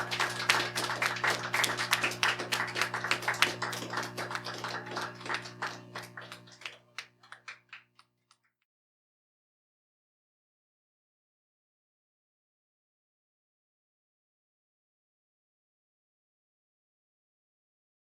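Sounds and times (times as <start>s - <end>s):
audience applauding: 0.0s - 8.0s.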